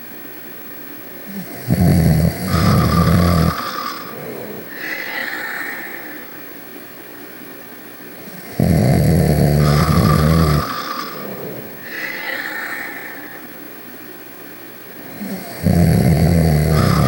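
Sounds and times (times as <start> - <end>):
person snoring: 1.3 - 6.3, 8.3 - 13.5, 15.0 - 17.0.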